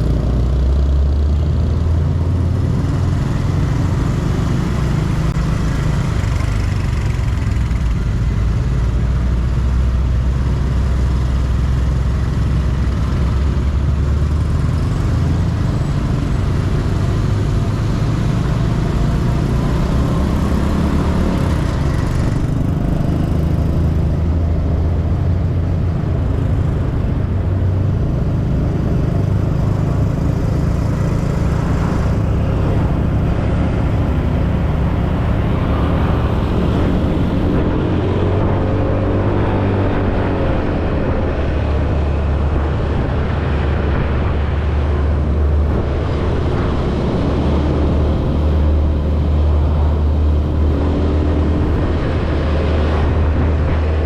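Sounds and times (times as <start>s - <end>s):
motorcycle engine rumbling: 0.0s - 54.0s.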